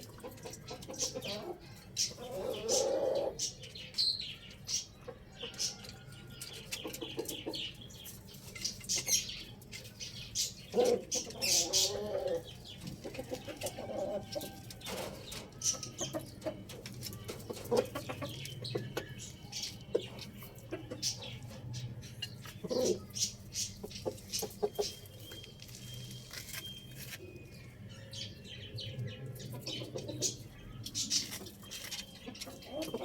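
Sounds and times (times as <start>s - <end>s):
chickens clucking: 0.0s - 27.2s, 28.2s - 33.0s
quick bird calls and clicks: 29.4s - 33.0s.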